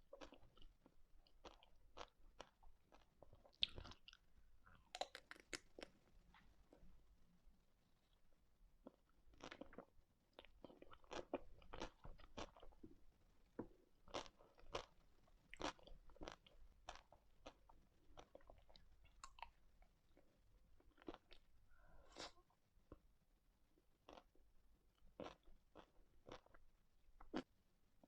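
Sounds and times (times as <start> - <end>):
person biting and chewing ice cream: 4.8 - 5.9.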